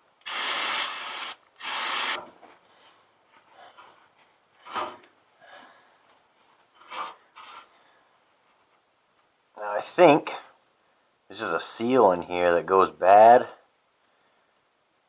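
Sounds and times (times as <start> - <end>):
pressurized spray hissing: 0.2 - 2.2.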